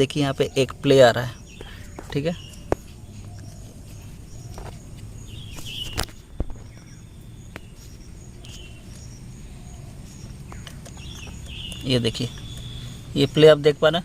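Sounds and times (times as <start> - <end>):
bird chirps: 0.0 - 14.0
steady low rumble: 0.0 - 14.0
sharp clicks: 10.2 - 13.0.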